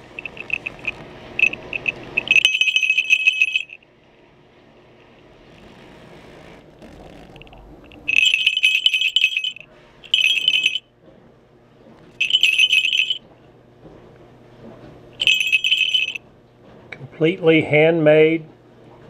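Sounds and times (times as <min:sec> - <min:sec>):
bells jingling: 0:00.0 - 0:03.8, 0:08.0 - 0:10.8, 0:12.2 - 0:13.2, 0:15.2 - 0:16.2.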